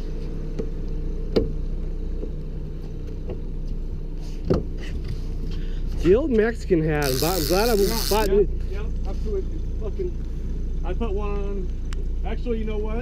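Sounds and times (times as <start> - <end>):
boat motor humming: 7.0 - 8.3
sharp clicks: 7.0 - 8.3.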